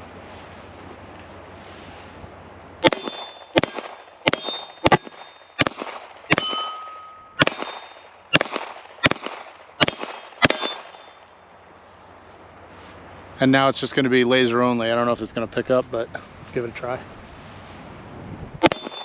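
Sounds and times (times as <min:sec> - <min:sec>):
metallic clang and ring: 0:02.8 - 0:05.7, 0:06.3 - 0:08.2, 0:10.4 - 0:11.3, 0:18.6 - 0:19.0
pistol shots: 0:02.8 - 0:11.2, 0:18.6 - 0:19.0.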